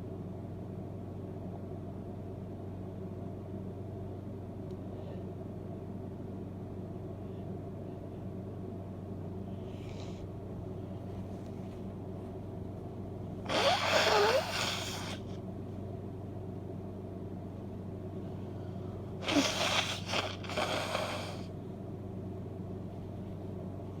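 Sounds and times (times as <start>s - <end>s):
woman sneezing: 13.5s - 15.3s, 19.2s - 20.5s.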